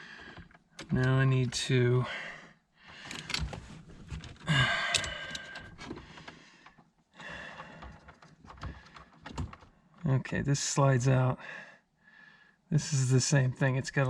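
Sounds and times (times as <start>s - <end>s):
plastic parts clicking and knocking: 0.2s - 1.6s, 2.9s - 10.0s.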